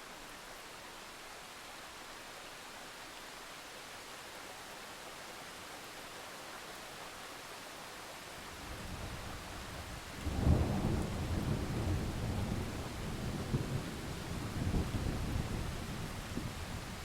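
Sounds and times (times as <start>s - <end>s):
rain hiss: 0.0s - 17.0s
thunder rumbling: 10.2s - 16.9s.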